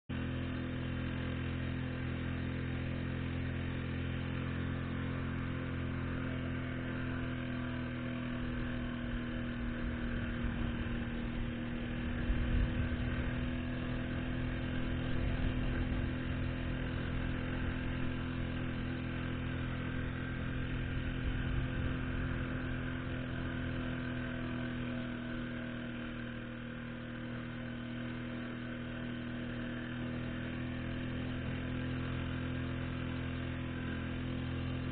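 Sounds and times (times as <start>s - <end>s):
outboard motor running: 0.1s - 34.9s
low rumble: 8.2s - 26.4s.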